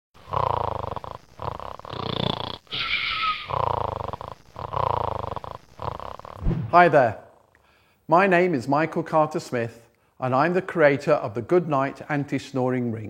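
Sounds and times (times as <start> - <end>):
person snoring: 0.2 - 6.5
hissing breath: 1.4 - 5.0.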